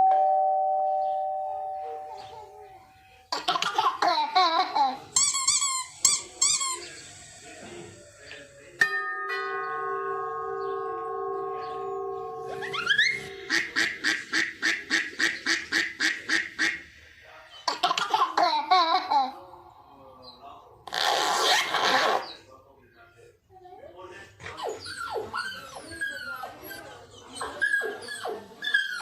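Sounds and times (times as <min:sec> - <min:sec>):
repeated honk-like calls: 0:12.5 - 0:17.0.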